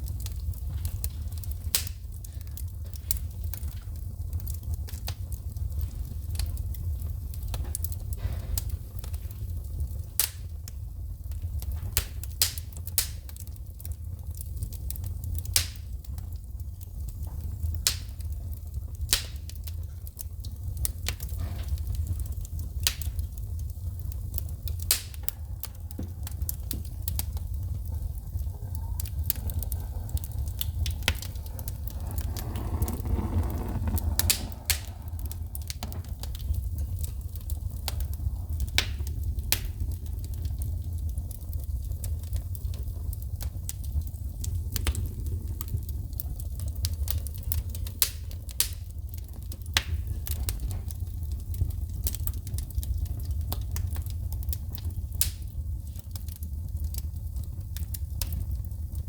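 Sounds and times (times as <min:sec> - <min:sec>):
wood fire crackling: 0:00.0 - 0:59.0
sparks popping: 0:29.0 - 0:39.8.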